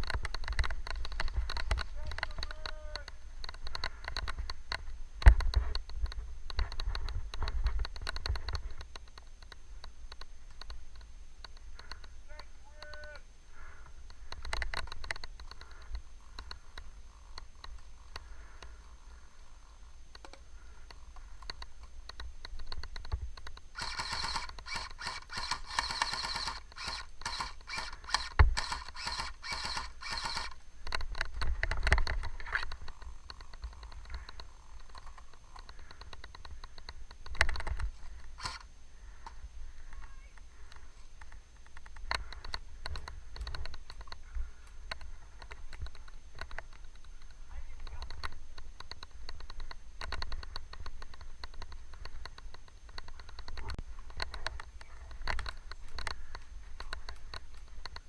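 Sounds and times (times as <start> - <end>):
airsoft guns firing: 23.8 - 30.6.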